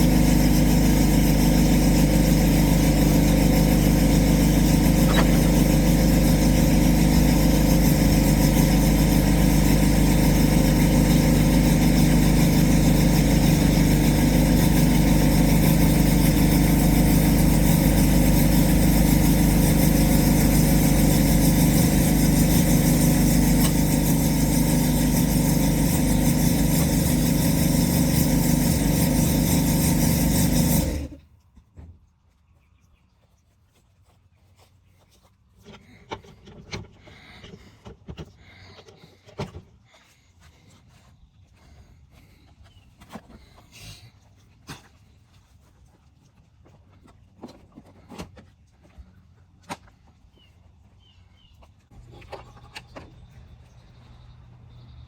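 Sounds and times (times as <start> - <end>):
engine running: 0.0 - 31.2.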